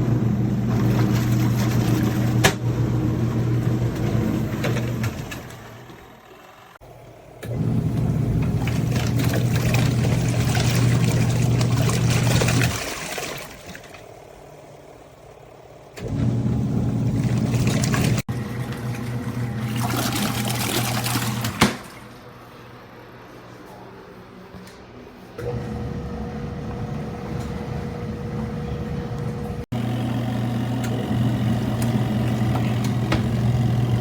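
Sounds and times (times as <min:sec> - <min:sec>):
washer motor humming: 0:00.0 - 0:22.4, 0:25.4 - 0:34.0
water churning and splashing: 0:00.6 - 0:02.4, 0:08.0 - 0:14.0, 0:16.8 - 0:22.1.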